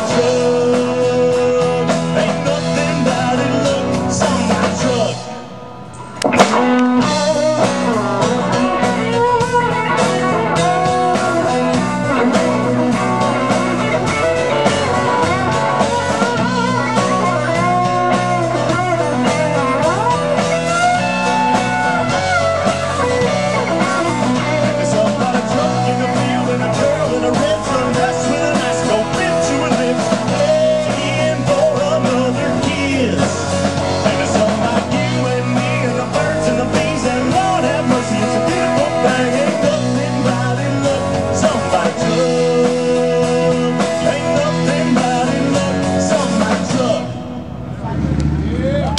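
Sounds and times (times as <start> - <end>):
electric guitar lead: 0.0 - 48.9
rock band playing: 0.0 - 48.9.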